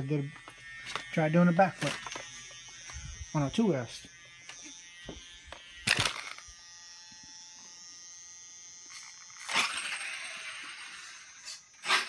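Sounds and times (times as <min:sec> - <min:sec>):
rc truck motor rushing: 0:05.8 - 0:06.5, 0:08.8 - 0:12.0.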